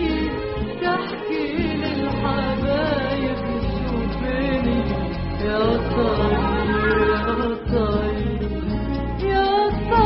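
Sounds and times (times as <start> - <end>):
steady bass accompaniment: 1.6 - 10.0
pitch-bending instrumental melody: 5.7 - 7.9.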